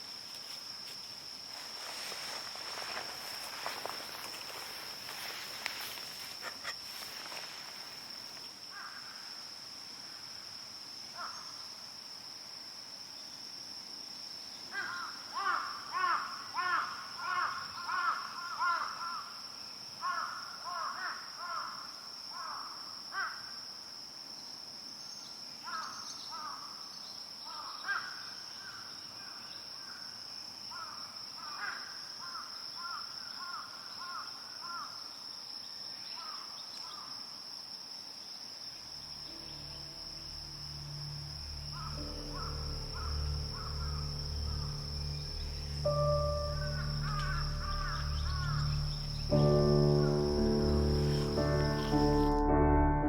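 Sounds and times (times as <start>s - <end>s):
crow cawing: 8.7s - 9.2s, 14.7s - 19.3s, 20.0s - 21.8s, 27.5s - 28.2s, 30.7s - 34.9s, 41.8s - 44.7s, 46.6s - 48.9s
high-pitched insect drone: 39.2s - 52.8s.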